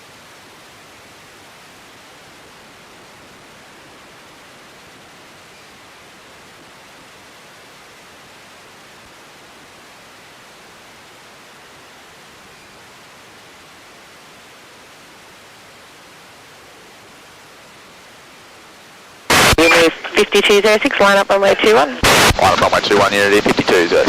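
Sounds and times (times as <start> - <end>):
radio static hiss: 1.4 - 24.0.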